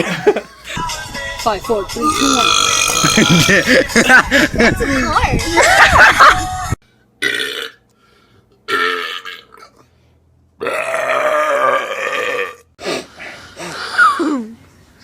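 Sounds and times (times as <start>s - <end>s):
person belching: 2.0s - 4.2s, 7.2s - 7.8s.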